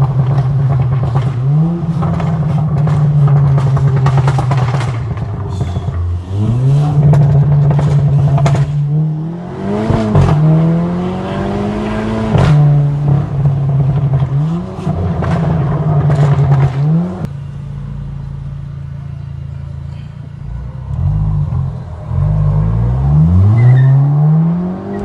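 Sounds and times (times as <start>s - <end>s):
exhaust crackles and pops: 0.0s - 9.0s, 9.8s - 10.6s, 12.3s - 17.4s
car engine revving: 0.0s - 25.0s.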